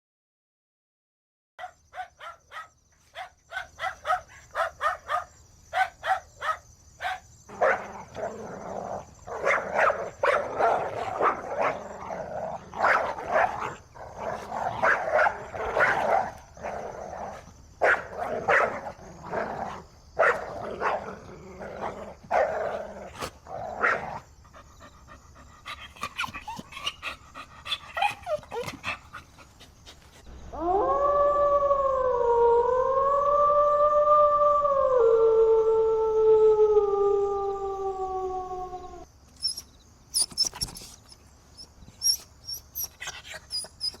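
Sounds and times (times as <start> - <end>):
dog barking: 1.6 - 8.2, 9.3 - 12.2, 12.8 - 13.8, 14.7 - 16.4, 17.8 - 18.9, 20.2 - 21.1, 23.8 - 24.2
dog whining: 25.8 - 29.0, 39.4 - 44.0.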